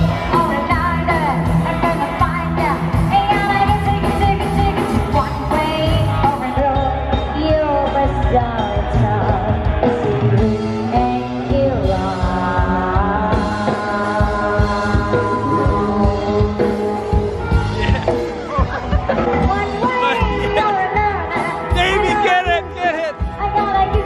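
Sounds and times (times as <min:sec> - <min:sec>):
rock music with singer: 0:00.0 - 0:24.0.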